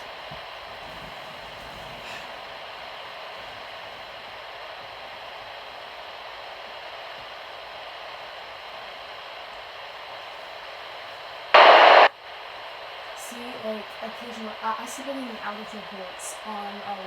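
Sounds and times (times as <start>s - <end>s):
radio static hiss: 11.5s - 12.1s.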